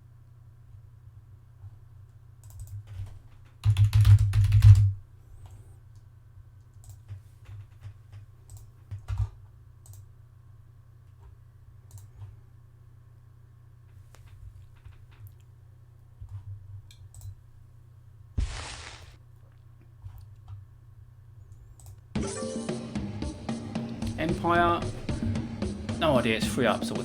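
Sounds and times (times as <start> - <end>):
keyboard typing: 2.4 - 4.9.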